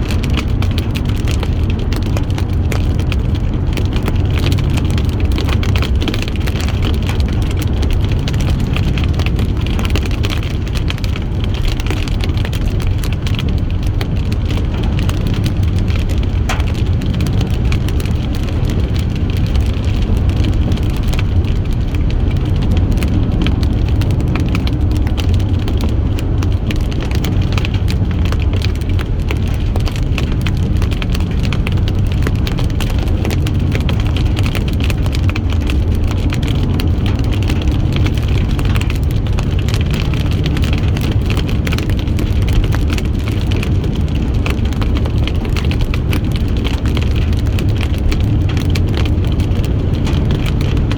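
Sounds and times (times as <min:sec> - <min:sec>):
car road noise: 0:00.0 - 0:50.9.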